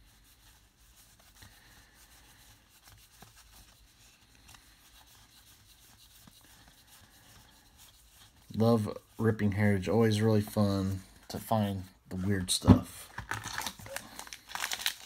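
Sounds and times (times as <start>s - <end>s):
trading cards rustling and clicking: 12.2s - 15.0s.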